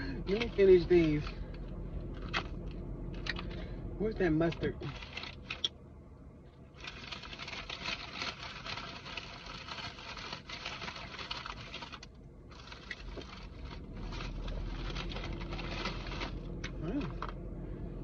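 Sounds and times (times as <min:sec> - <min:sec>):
low steady hum: 0:00.0 - 0:18.0
paper bag and wrappers crinkling: 0:04.5 - 0:05.7, 0:06.7 - 0:17.3.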